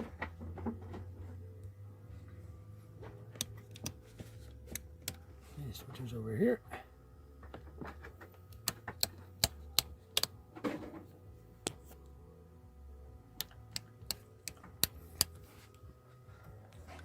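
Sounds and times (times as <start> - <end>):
toggle switches clicking: 3.4 - 4.0, 8.5 - 10.4, 13.4 - 15.4.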